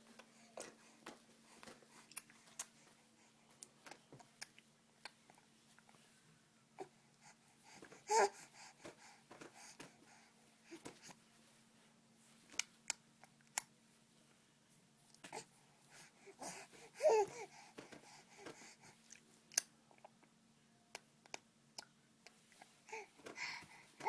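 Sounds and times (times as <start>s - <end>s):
baby breathing softly: 0.2s - 3.5s, 6.8s - 11.2s, 15.3s - 19.1s, 22.6s - 24.0s
baby mouth clicks and smacks: 3.6s - 5.4s, 19.1s - 19.7s.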